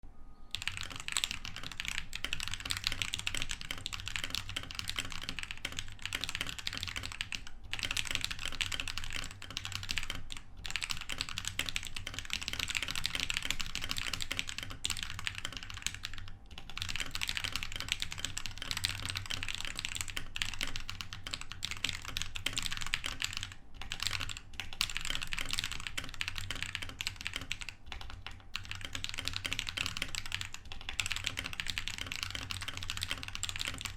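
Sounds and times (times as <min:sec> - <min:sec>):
fast typing on mechanical keyboard: 0:00.5 - 0:33.9.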